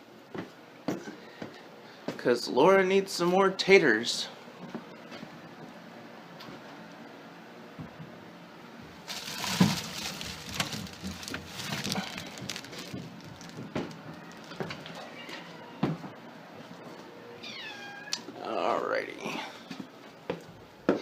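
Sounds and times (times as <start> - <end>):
rustling: 9.0 - 15.5.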